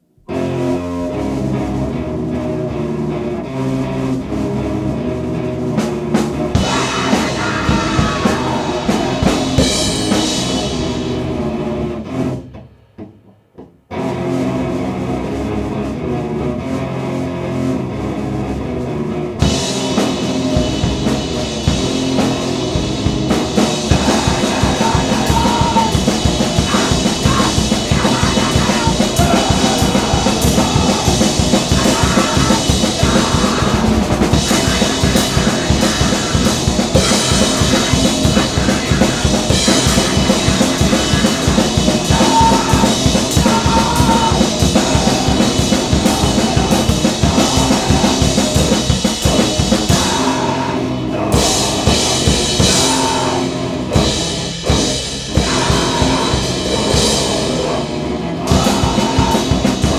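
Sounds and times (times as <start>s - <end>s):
distorted guitar noise: 0.0s - 12.4s, 13.9s - 59.9s
fast relentless drumming: 5.7s - 11.4s, 19.4s - 59.9s.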